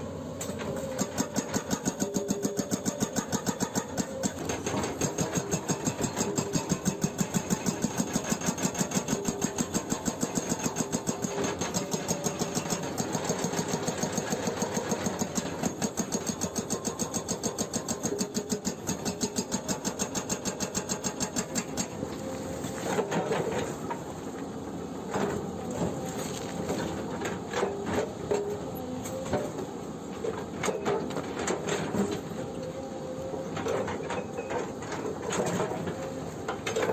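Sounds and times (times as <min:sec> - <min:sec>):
excavator engine running: 0:00.0 - 0:36.9
hydraulic breaker hammering rock: 0:00.4 - 0:22.0.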